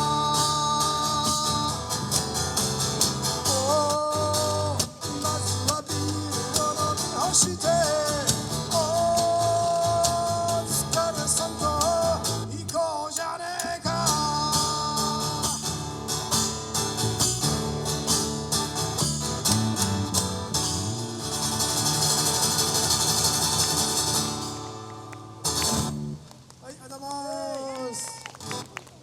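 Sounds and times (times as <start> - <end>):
person singing: 0.0 - 2.3, 3.4 - 15.6
strummed acoustic guitar: 0.0 - 26.2.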